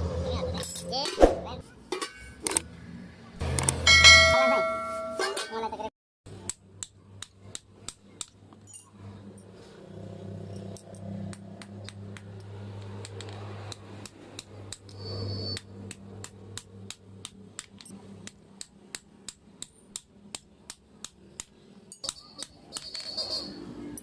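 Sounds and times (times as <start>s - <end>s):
hammer striking metal: 3.6s - 5.6s, 14.4s - 24.0s.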